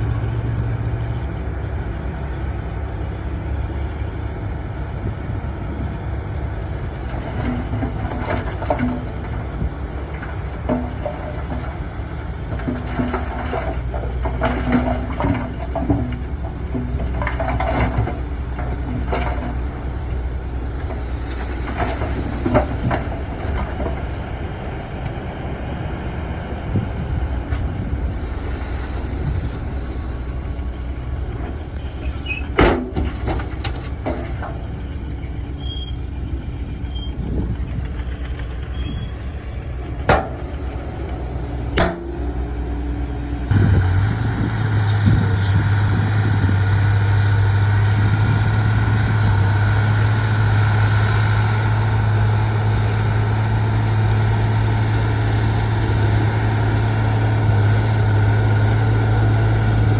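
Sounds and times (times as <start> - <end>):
diesel engine of earthmover: 0.0 - 59.9
metallic clanks: 27.4 - 27.9.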